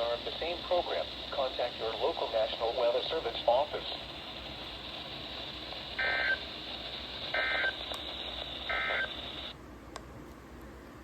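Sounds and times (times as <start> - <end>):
radio hiss: 0.0 - 9.6
digital data tone bursts: 7.3 - 9.5.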